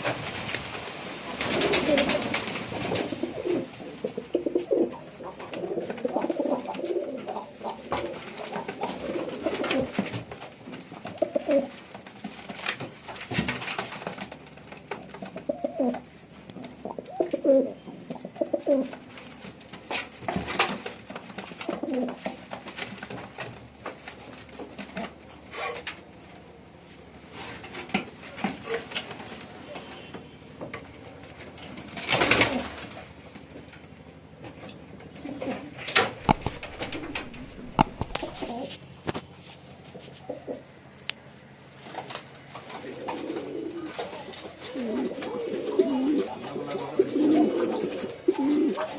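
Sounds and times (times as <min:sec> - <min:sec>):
pigeons cooing: 0:00.0 - 0:12.0, 0:14.9 - 0:22.6, 0:32.0 - 0:33.2, 0:34.7 - 0:38.8, 0:40.1 - 0:40.8, 0:42.4 - 0:48.9.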